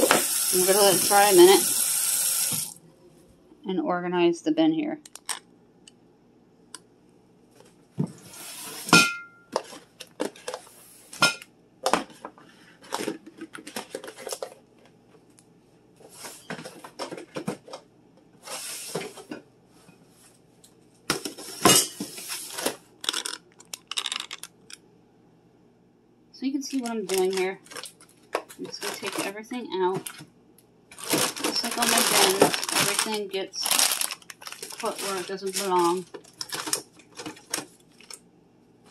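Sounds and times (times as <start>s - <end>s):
packaging rustling: 9.6s - 10.9s, 11.8s - 15.0s, 22.2s - 24.8s, 26.7s - 29.4s, 30.9s - 38.3s
food containers knocking and clinking: 11.2s - 14.6s, 16.4s - 17.9s, 31.0s - 33.0s.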